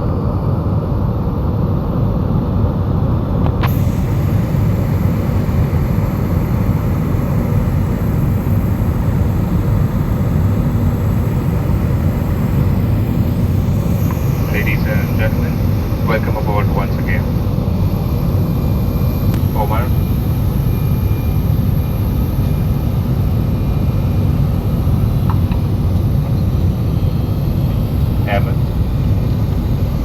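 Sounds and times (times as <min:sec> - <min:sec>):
airliner cabin rumble: 0:03.2 - 0:30.0.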